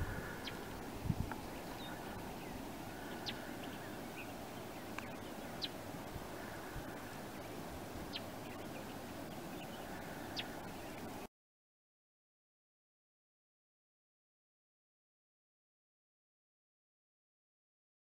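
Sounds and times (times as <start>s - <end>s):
rushing river: 0.0s - 11.2s.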